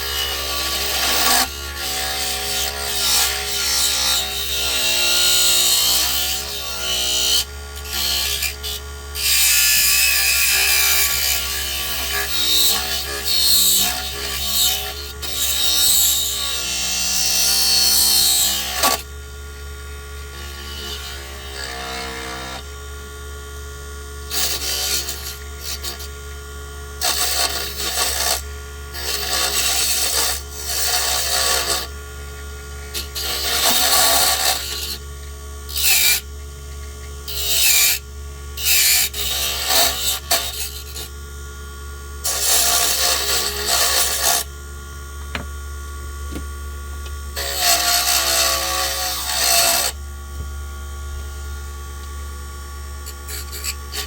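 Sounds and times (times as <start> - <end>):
tool scraping spinning wood: 0.0 - 22.6, 24.2 - 41.2, 42.2 - 44.6, 45.2 - 50.6, 51.2 - 54.0.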